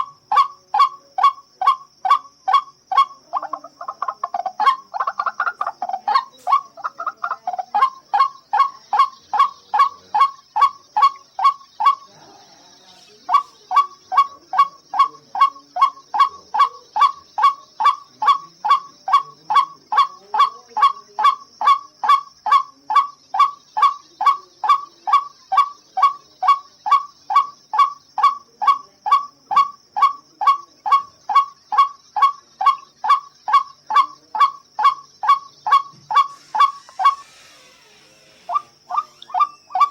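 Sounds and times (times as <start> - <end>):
waterhen calling: 0.0 - 39.9.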